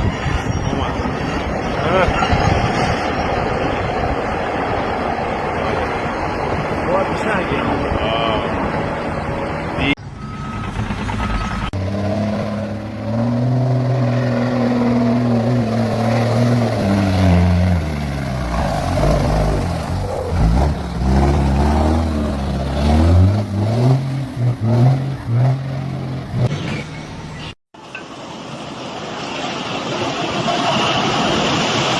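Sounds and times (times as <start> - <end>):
heavy vehicle engine revving: 7.6 - 27.6.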